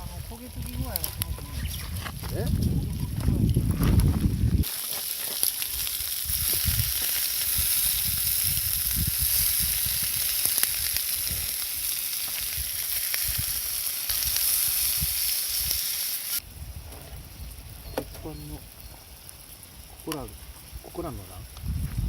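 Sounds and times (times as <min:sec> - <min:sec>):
low rumbles: 0:00.0 - 0:04.7
food sizzling on a griddle: 0:00.0 - 0:22.0.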